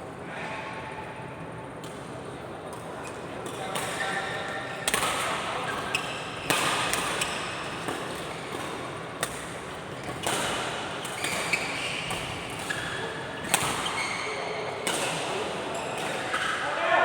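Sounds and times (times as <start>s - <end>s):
racket hitting shuttlecock: 4.8s - 14.0s, 14.8s - 16.5s
shoe squeaks: 11.2s - 14.5s.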